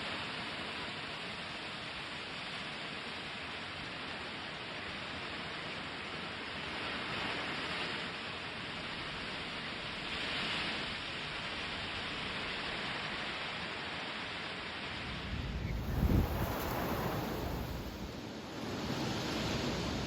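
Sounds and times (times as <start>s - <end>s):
skis sliding over snow: 15.7s - 18.2s.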